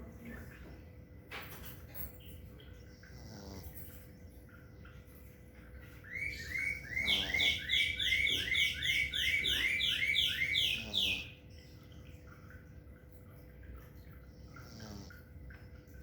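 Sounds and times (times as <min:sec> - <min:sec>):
cat snoring: 0:03.1 - 0:03.8
bird chirping: 0:05.8 - 0:12.3.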